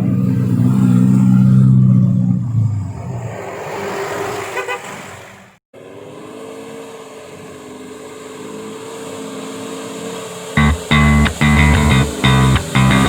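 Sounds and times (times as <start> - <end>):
pulsing horn toot: 10.6 - 13.0
vehicle engine running: 10.6 - 13.0.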